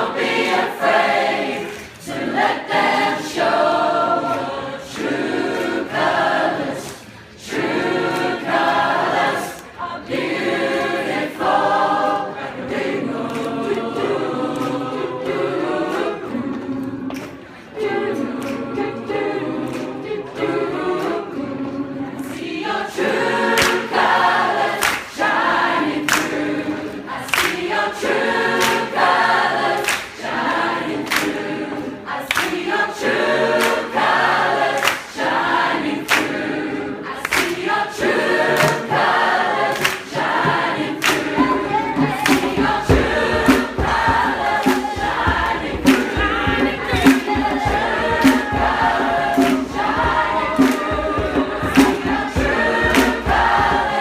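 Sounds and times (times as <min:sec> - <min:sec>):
choir singing in harmony: 0:00.0 - 0:54.0
sharp tapping beat: 0:40.3 - 0:54.0.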